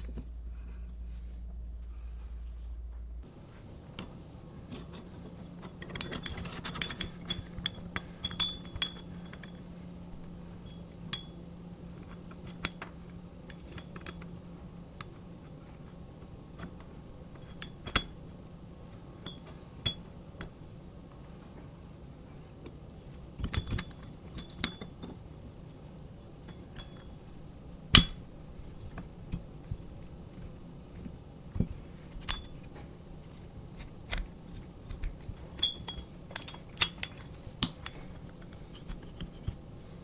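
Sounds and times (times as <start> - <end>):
faint steady hum: 0.0 - 40.0
small hard parts clinking: 4.0 - 14.3, 26.2 - 29.0, 31.6 - 40.0.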